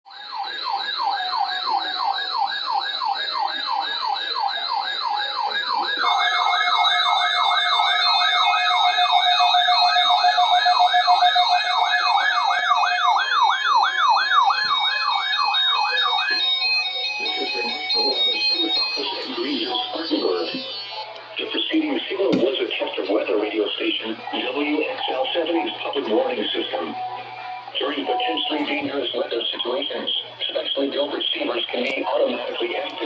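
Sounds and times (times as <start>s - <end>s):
electronic siren wailing: 0.1s - 21.1s
steady siren tone: 0.1s - 21.1s.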